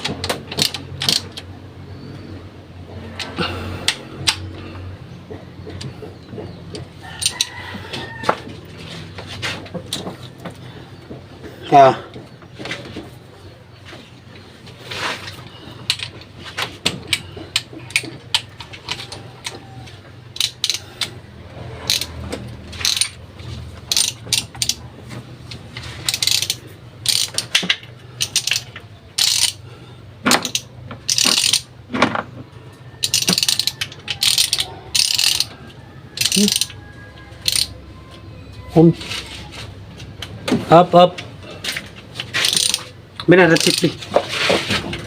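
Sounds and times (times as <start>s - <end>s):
metal tools clicking and rattling: 0.0s - 1.5s, 5.3s - 12.2s, 15.3s - 32.3s, 33.0s - 37.8s, 41.5s - 45.0s.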